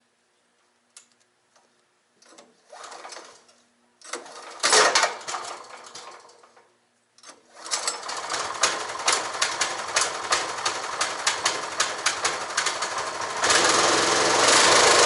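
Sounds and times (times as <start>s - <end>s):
wood chipper shredding branches: 8.1s - 15.0s.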